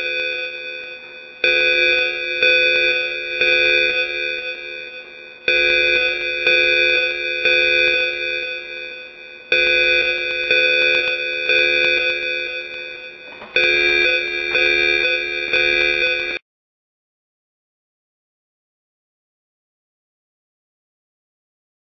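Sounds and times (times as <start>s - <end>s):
fire alarm ringing chime: 0.0s - 16.4s.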